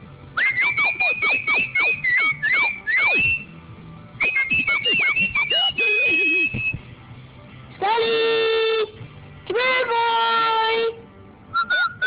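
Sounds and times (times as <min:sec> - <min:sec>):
person whistling: 0:00.4 - 0:03.5, 0:04.2 - 0:06.9.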